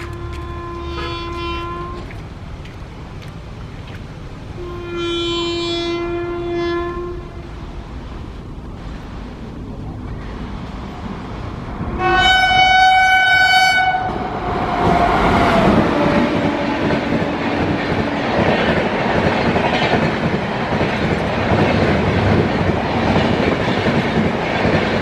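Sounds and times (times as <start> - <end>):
train horn blast: 0.0 - 2.2, 4.6 - 7.6, 11.9 - 17.6
low rumble of approaching train: 0.0 - 25.0
train passing close: 0.0 - 25.0.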